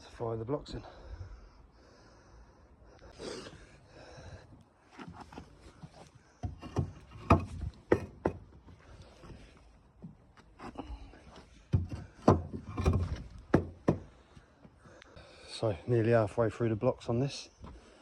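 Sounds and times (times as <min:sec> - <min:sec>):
concrete block scraping: 0:04.9 - 0:09.6, 0:10.4 - 0:14.0
block knocking on concrete: 0:06.7 - 0:08.4, 0:11.7 - 0:14.1.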